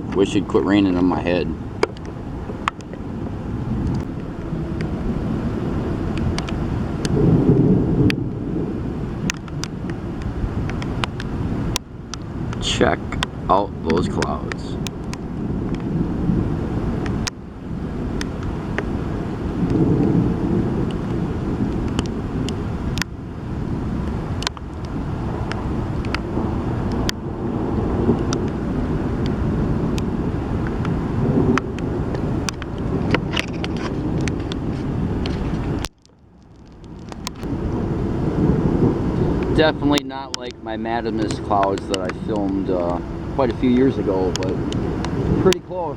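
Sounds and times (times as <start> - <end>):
wind buffeting microphone: 0.0 - 45.9
sharp ticks: 1.8 - 3.0, 6.1 - 7.2, 9.2 - 15.9, 17.0 - 17.4, 18.2 - 18.9, 20.8 - 23.1, 24.0 - 27.2, 30.0 - 34.6, 39.2 - 45.8.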